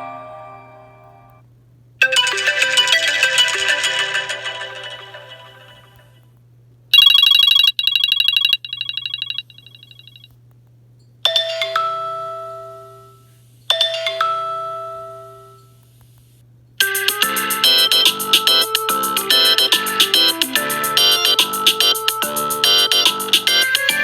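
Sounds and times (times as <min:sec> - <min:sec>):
bell-like chime: 0:02.0 - 0:06.1
high pulsing electronic ringtone: 0:02.0 - 0:06.2, 0:07.0 - 0:10.3, 0:16.8 - 0:24.0.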